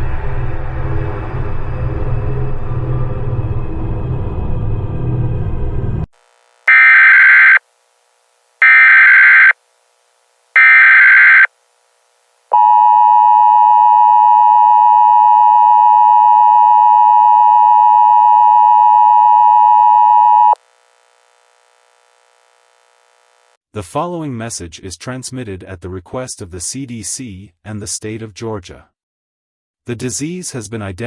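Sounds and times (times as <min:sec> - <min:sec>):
digital data screech: 0:06.7 - 0:07.6, 0:08.6 - 0:09.5, 0:10.6 - 0:11.5
two-tone attention signal: 0:06.7 - 0:07.6, 0:08.6 - 0:09.5, 0:10.6 - 0:11.5.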